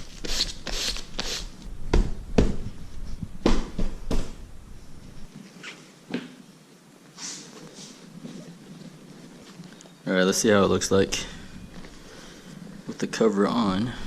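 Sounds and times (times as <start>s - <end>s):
scraping strokes on foam: 0.0s - 1.5s.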